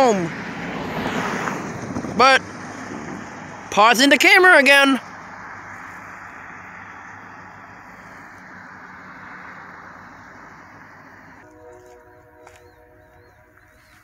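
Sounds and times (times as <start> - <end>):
road vehicle rushing with hum: 0.0 - 14.0
faint chord of steady tones: 6.0 - 14.0.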